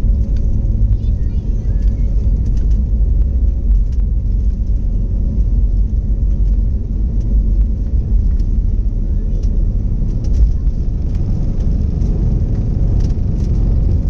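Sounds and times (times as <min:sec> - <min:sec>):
airplane cabin engine rumble: 0:00.0 - 0:14.0.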